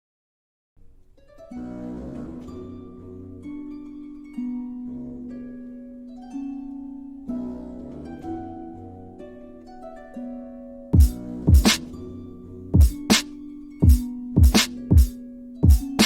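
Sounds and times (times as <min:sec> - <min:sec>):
plucked harp-like melody: 0:00.8 - 0:16.0
heavy bass drum hits: 0:11.0 - 0:11.8, 0:12.8 - 0:13.2, 0:13.8 - 0:16.0.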